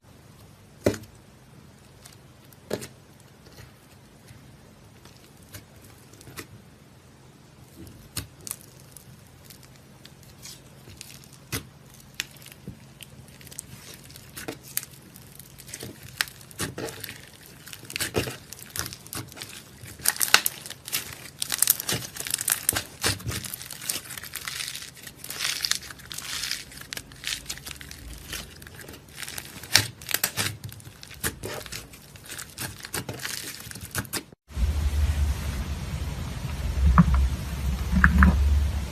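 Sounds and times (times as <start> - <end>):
slime crackling and popping: 7.7 - 34.4, 36.5 - 38.9.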